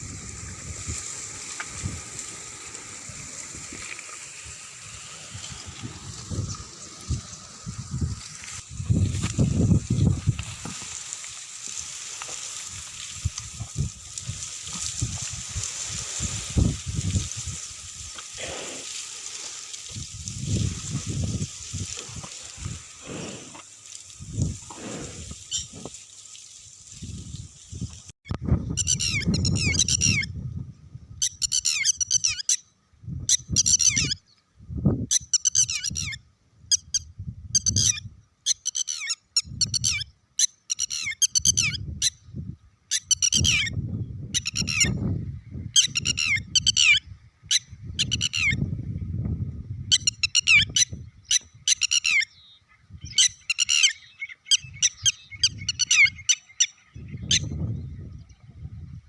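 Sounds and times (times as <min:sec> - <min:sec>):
birds chirping: 0:49.9 - 0:58.5.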